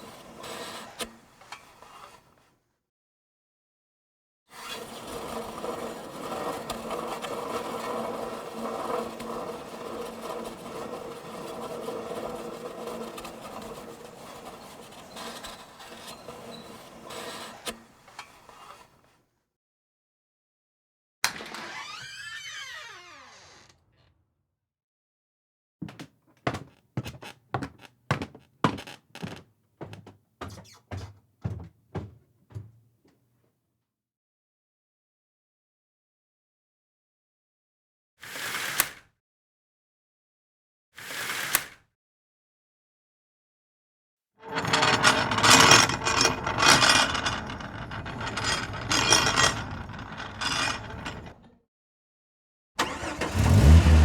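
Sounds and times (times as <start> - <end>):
mechanism rattling and grinding: 44.4 - 51.5.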